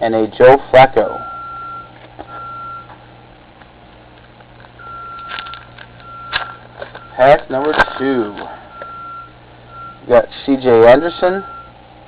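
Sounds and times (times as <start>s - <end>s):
electronic beeping: 1.1s - 2.9s, 4.8s - 10.1s, 11.3s - 11.8s.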